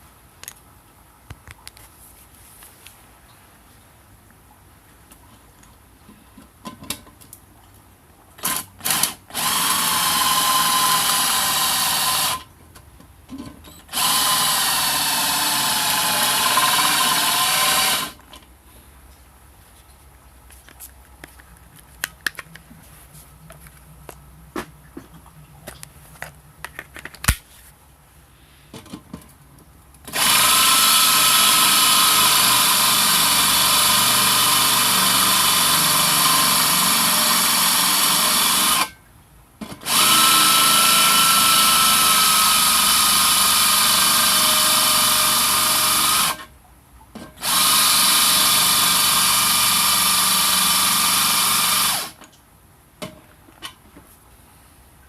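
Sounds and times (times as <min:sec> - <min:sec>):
handheld power tool running: 0:08.4 - 0:12.5, 0:13.9 - 0:18.2, 0:30.1 - 0:38.9, 0:39.8 - 0:46.4, 0:47.4 - 0:52.2.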